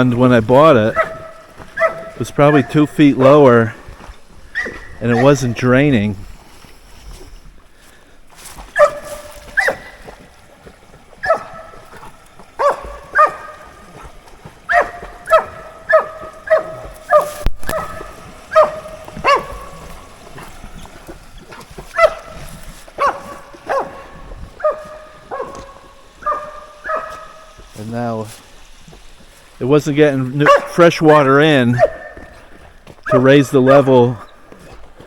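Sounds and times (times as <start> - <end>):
dog barking: 0.9 - 3.8, 4.5 - 5.5, 8.7 - 10.1, 11.2 - 14.1, 14.7 - 20.5, 21.9 - 27.6, 30.4 - 30.8, 31.7 - 32.4, 33.0 - 34.4.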